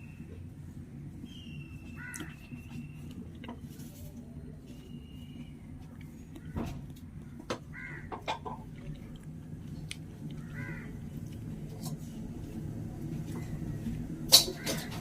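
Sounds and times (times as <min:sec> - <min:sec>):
low background rumble: 0:00.0 - 0:15.0
crow cawing: 0:02.0 - 0:02.4, 0:07.7 - 0:08.4, 0:10.4 - 0:11.0.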